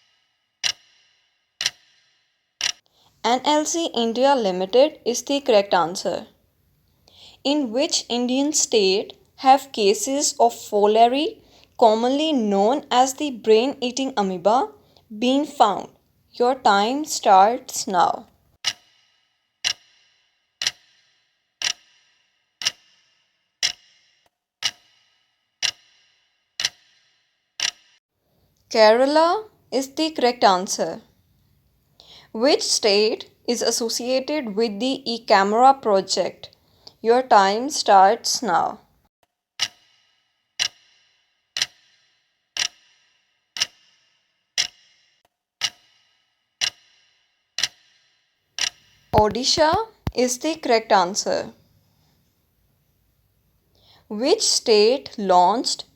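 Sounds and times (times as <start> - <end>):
clock ticking: 0.0 - 1.0, 1.6 - 2.0, 2.6 - 6.3, 7.5 - 18.9, 19.6 - 19.9, 20.6 - 21.0, 21.6 - 22.0, 23.6 - 24.0, 24.6 - 25.0, 25.6 - 26.0, 26.6 - 27.0, 27.6 - 27.9, 39.6 - 39.8, 40.6 - 40.8, 41.6 - 42.0, 42.6 - 43.0, 43.6 - 43.9, 44.6 - 44.9, 45.6 - 46.0, 46.6 - 47.0, 47.6 - 48.0, 48.6 - 51.5.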